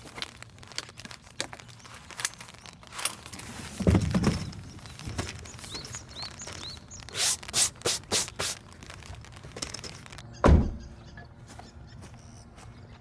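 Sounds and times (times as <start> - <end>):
short rustling strokes: 4.7 - 10.2
heavy dull thump: 10.4 - 11.0.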